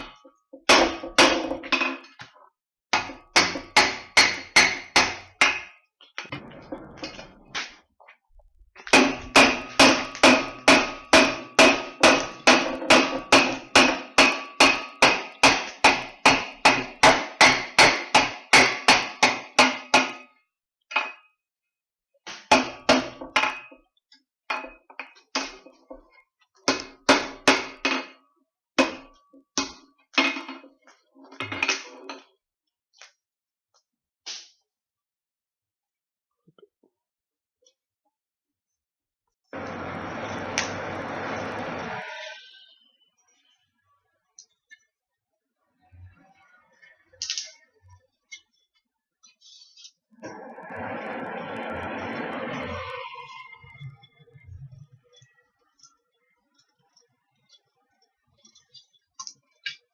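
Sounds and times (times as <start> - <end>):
hammer striking steel on anvil: 3.0 - 5.7, 8.9 - 20.3.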